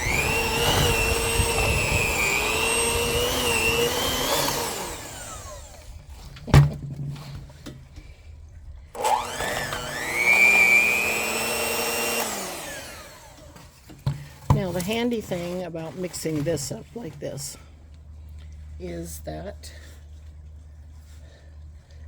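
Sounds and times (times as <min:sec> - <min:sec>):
electric mixer motor whine: 0:00.0 - 0:06.2, 0:09.0 - 0:13.8.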